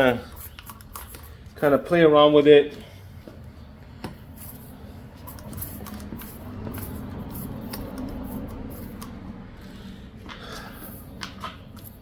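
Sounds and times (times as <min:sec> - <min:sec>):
reamer scraping in tyre: 0:04.4 - 0:12.0.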